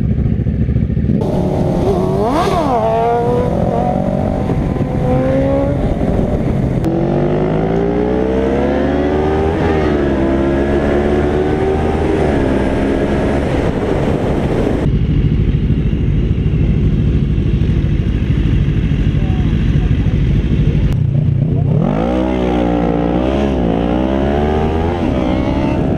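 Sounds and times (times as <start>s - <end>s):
motorcycle engine accelerating: 0.0s - 25.9s
low steady rumble: 13.7s - 21.8s.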